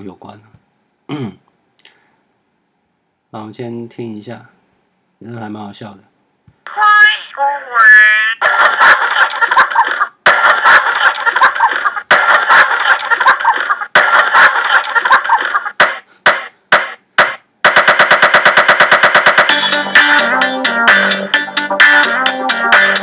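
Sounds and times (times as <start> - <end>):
chopped sample stutter: 15.8 - 20.3
music: 17.7 - 23.0.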